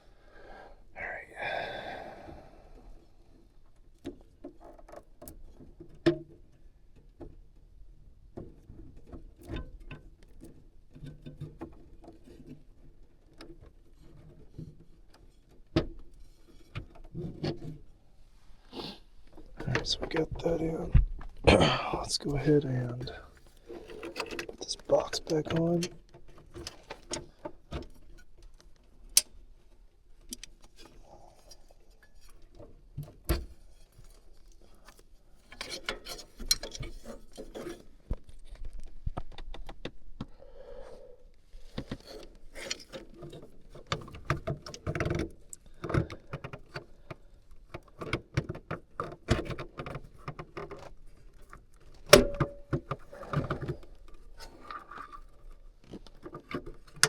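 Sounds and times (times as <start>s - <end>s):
clicks and small knocks: 22.3s - 29.4s, 41.7s - 57.0s.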